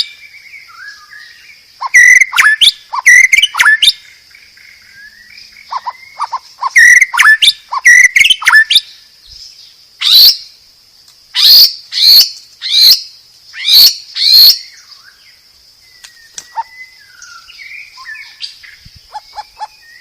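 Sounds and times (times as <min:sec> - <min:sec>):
bird singing whistled phrases: 0:00.0 - 0:04.0, 0:05.0 - 0:08.9, 0:11.4 - 0:13.0, 0:13.6 - 0:15.2, 0:15.8 - 0:20.0.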